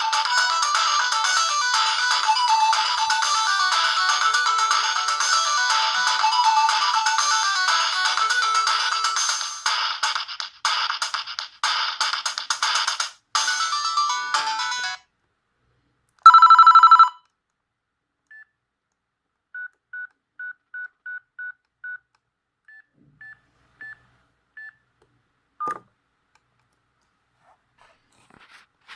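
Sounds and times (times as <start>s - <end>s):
phone ringtone melody: 0.0s - 10.3s, 13.4s - 15.0s, 16.3s - 17.2s.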